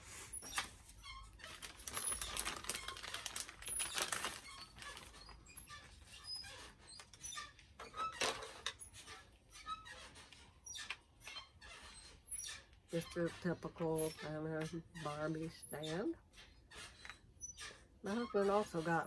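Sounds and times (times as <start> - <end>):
packaging rustling and crinkling: 0.0 - 7.2.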